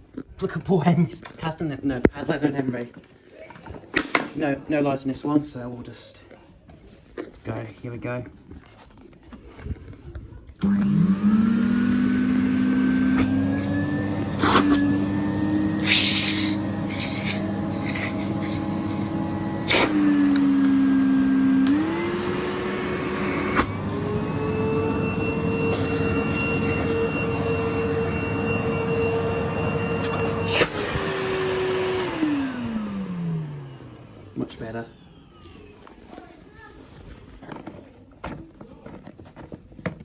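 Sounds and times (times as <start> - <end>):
vacuum cleaner motor whining: 9.8 - 40.0
hissing: 12.4 - 33.0.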